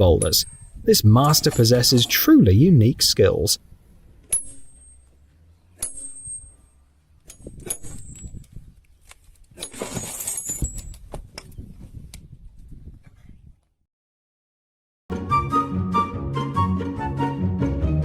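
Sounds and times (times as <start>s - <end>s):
high metallic ring: 4.3s - 5.2s, 5.8s - 8.4s.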